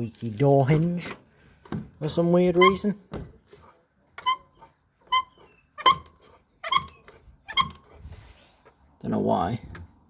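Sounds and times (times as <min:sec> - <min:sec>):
door hinge squeaking: 0:02.4 - 0:03.0, 0:04.2 - 0:08.0.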